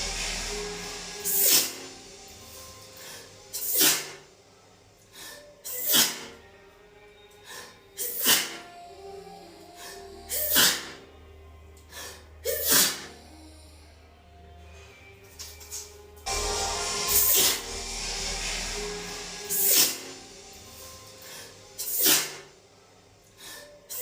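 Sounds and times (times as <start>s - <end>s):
quiet music: 0.0s - 24.0s
woman sneezing: 10.3s - 11.0s, 12.4s - 13.2s.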